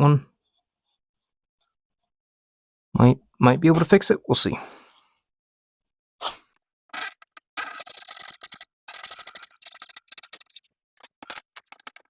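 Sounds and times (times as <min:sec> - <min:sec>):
hand saw cutting wood: 0:07.0 - 0:12.0.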